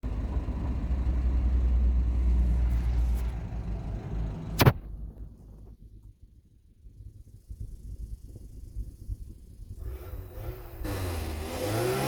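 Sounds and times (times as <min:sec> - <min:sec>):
van engine idling: 0:00.0 - 0:06.0.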